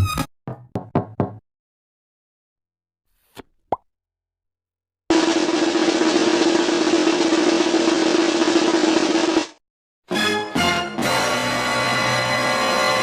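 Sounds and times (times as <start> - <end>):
snare drum roll: 5.1 - 9.6.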